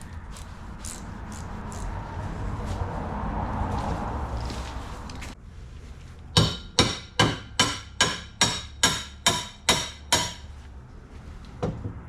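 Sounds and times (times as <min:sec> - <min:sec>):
steady background noise: 0:00.0 - 0:12.0.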